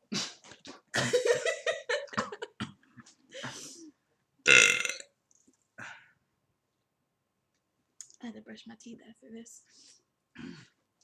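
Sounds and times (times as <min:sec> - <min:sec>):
person burping: 0:04.5 - 0:05.0.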